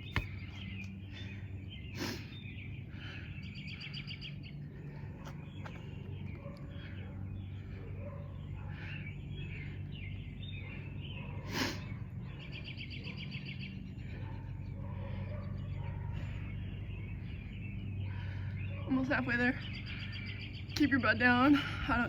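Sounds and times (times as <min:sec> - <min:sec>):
small birds chirping: 0:00.0 - 0:22.0
steady low hum: 0:00.0 - 0:22.0.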